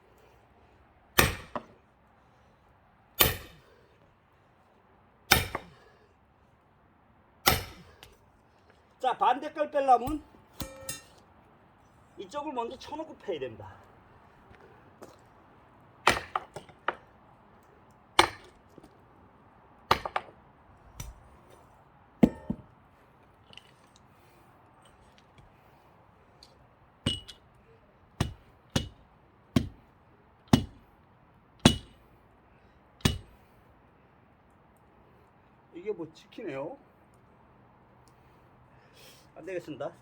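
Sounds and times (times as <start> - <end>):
metal blows on axe head: 10.0 - 11.2, 31.6 - 32.0.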